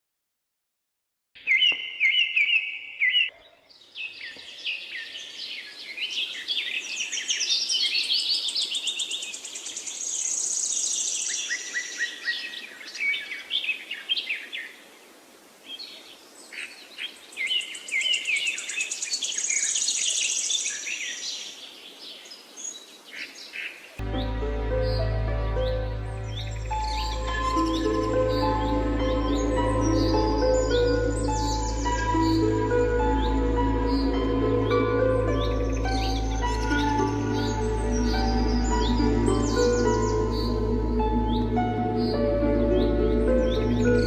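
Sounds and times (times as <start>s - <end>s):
songbirds chirping and trilling: 1.4s - 44.0s
faint steady hiss: 8.3s - 24.7s.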